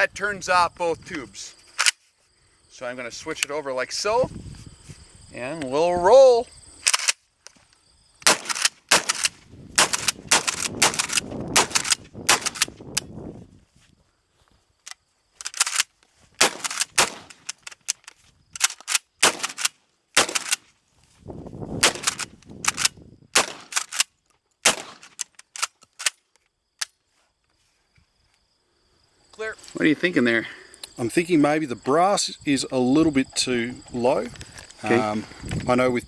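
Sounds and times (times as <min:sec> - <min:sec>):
shotgun pump clacking: 0:06.8 - 0:07.2, 0:08.2 - 0:13.1, 0:15.4 - 0:20.6, 0:21.8 - 0:24.1
shotgun firing: 0:08.2 - 0:12.7, 0:16.4 - 0:17.4, 0:19.2 - 0:20.6, 0:21.8 - 0:22.2, 0:23.4 - 0:23.9, 0:24.6 - 0:25.1.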